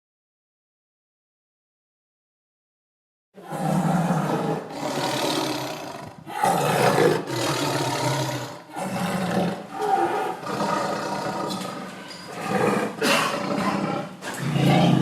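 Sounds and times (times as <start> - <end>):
tiger roaring and growling: 3.4 - 15.0.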